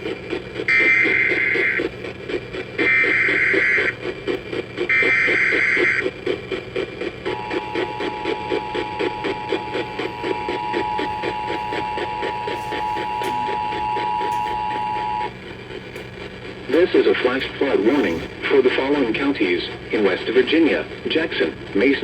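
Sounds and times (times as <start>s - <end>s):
quiet pulsing sound: 0.0s - 19.8s
two-tone attention signal: 7.3s - 15.3s.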